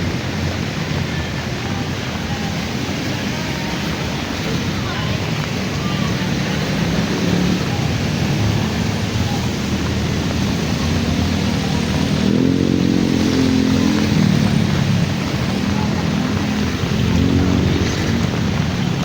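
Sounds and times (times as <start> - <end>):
heavy rain and rushing water: 0.0 - 19.0
vehicle engine passing: 3.9 - 19.0.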